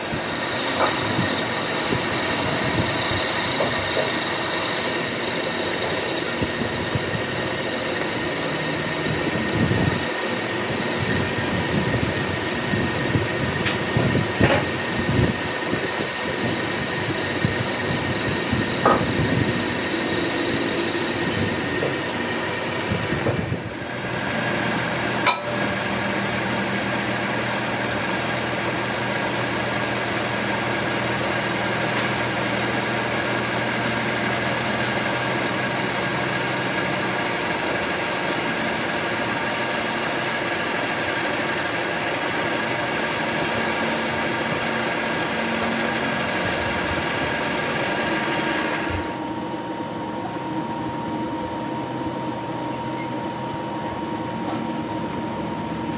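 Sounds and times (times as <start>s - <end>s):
metal lathe humming: 0.0s - 55.9s.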